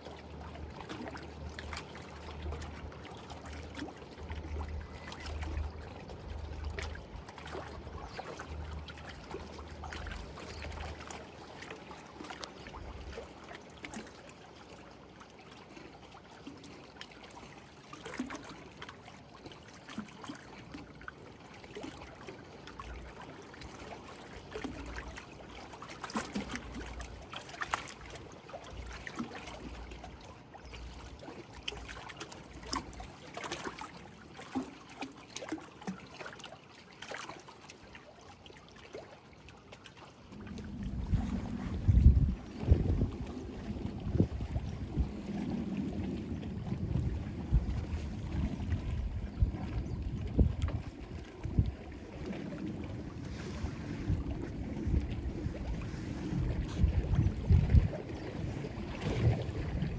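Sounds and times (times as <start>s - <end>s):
lake waves lapping on shore: 0.0s - 59.9s
low rumble: 40.3s - 50.7s.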